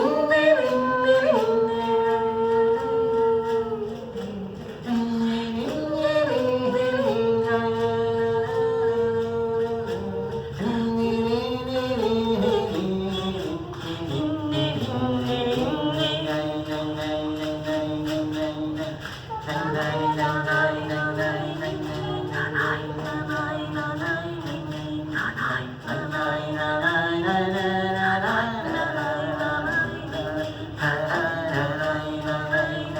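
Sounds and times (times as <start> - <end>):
person singing long held notes: 0.0 - 32.9.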